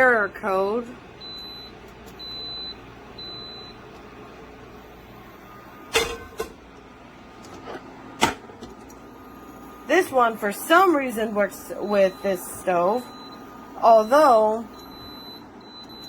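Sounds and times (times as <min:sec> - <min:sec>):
steady hum: 0:00.0 - 0:16.0
induction hob beeping: 0:01.2 - 0:04.0, 0:09.0 - 0:16.0.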